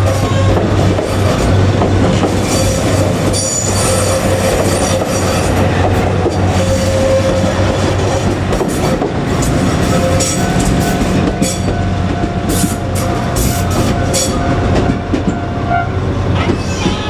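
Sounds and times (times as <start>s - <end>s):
diesel locomotive engine drone: 0.0s - 17.0s
train wheel noise on rails: 0.0s - 17.0s
high wheel squeal: 2.3s - 5.7s, 6.4s - 11.8s, 15.8s - 17.0s.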